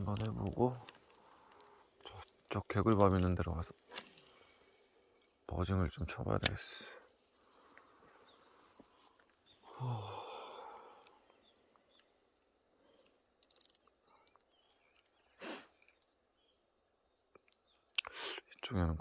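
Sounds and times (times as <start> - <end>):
outdoor ambience: 0.0 - 19.0
person sighing: 9.6 - 11.2
short breathy burst: 15.4 - 15.8.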